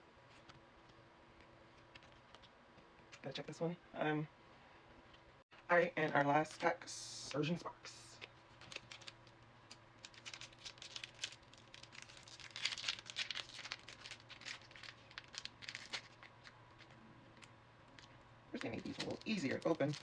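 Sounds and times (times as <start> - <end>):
foil wrapper crinkling and tearing: 8.5 - 20.0.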